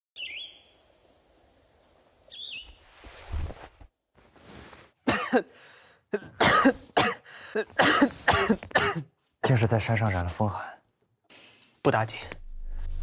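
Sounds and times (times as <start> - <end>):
bird chirps: 0.2 - 2.8
person coughing: 5.1 - 5.6, 6.2 - 9.2.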